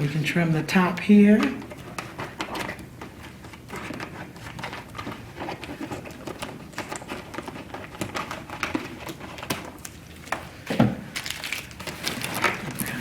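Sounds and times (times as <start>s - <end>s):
contact paper crackling and rustling: 0.0s - 13.0s
small irregular clicks and taps: 1.4s - 10.5s.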